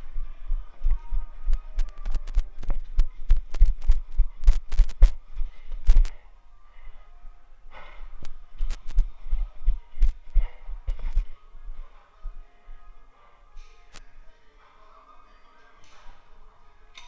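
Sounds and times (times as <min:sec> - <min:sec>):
sharp clicks and cracks: 0:01.8 - 0:05.2.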